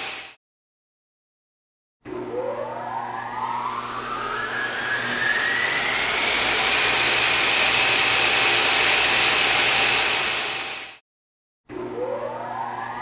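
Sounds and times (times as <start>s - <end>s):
machine high whine: 2.1s - 11.0s, 11.8s - 13.0s.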